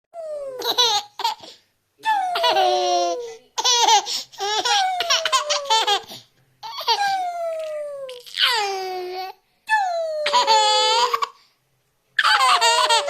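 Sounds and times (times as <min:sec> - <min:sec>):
baby laughing: 0:00.4 - 0:01.6, 0:02.2 - 0:09.3, 0:10.2 - 0:11.4, 0:12.2 - 0:13.0.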